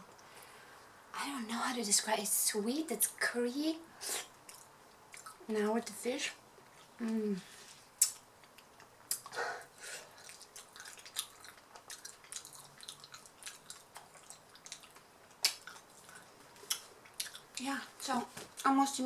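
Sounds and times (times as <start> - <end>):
wet chewing: 4.4 - 5.4, 10.0 - 17.7
lip smacks: 8.0 - 9.4, 10.1 - 17.6
sharp mouth clicks: 8.0 - 9.4.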